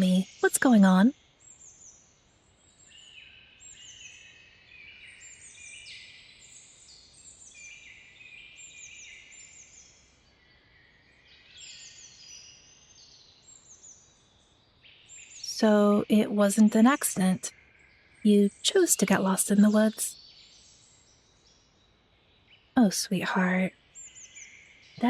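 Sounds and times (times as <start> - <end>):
soft background hiss: 0.0 - 1.1, 15.5 - 17.5, 18.3 - 20.1
small birds chirping: 0.0 - 17.5, 18.3 - 25.0.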